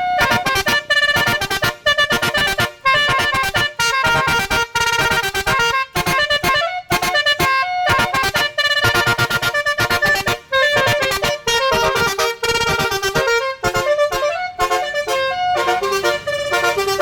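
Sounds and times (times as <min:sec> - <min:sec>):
musical air horn playing tune: 0:00.0 - 0:17.0.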